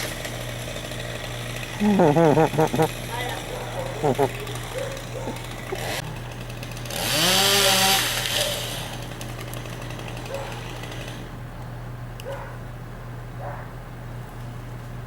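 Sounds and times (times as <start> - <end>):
chainsaw revving: 0.0 - 11.4
engine droning: 0.0 - 15.0.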